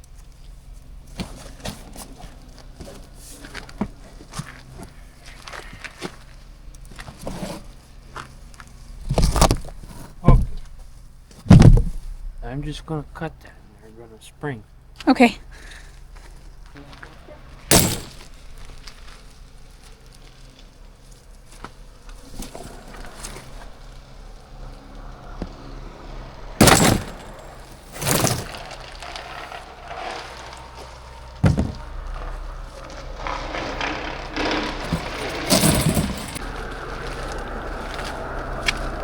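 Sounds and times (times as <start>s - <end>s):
low engine hum: 0.0s - 39.0s
loud knocks: 10.3s - 10.8s, 11.4s - 12.4s, 17.7s - 18.3s, 26.6s - 27.4s, 31.4s - 36.4s.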